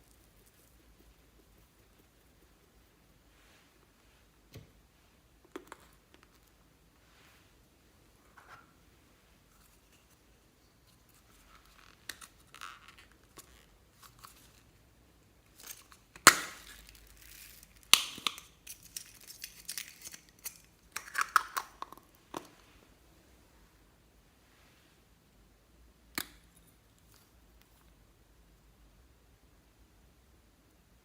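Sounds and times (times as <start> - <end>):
crinkling crunching handling: 15.5 - 21.2
crackles: 15.5 - 22.9.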